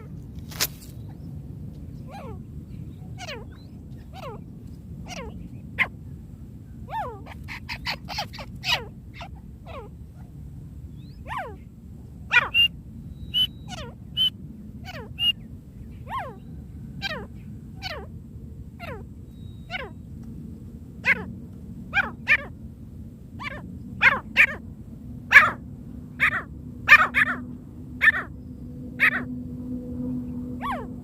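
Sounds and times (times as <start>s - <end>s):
steady low hiss: 0.0s - 31.0s
francolin calls: 2.0s - 6.0s, 6.9s - 10.0s, 12.3s - 18.1s, 18.8s - 20.1s, 21.0s - 21.3s, 21.9s - 22.5s, 23.4s - 24.6s, 25.3s - 29.3s, 30.1s - 31.0s.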